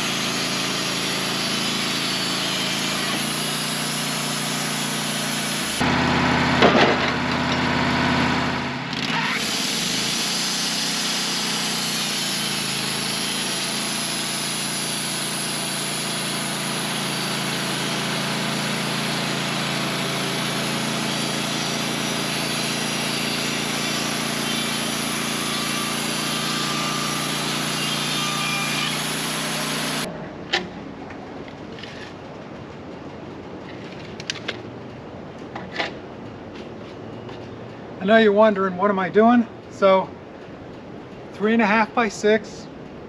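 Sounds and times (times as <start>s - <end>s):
sawmill engine running: 0.0s - 31.0s.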